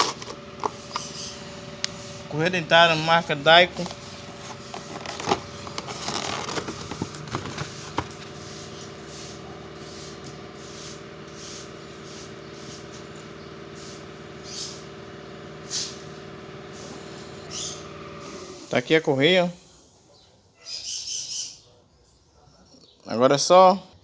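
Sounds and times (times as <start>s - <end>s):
packaging crackling and scraping: 0.0s - 1.2s, 3.6s - 8.8s
steady low hum: 0.0s - 20.1s.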